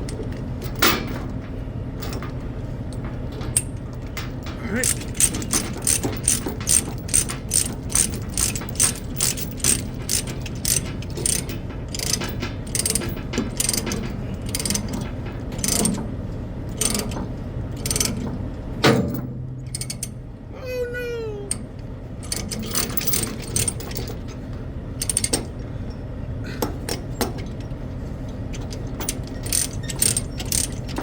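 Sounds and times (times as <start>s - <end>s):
low steady hum: 0.0s - 31.0s
ratchet pawl clicking: 4.8s - 14.9s, 25.0s - 25.5s, 28.6s - 31.0s.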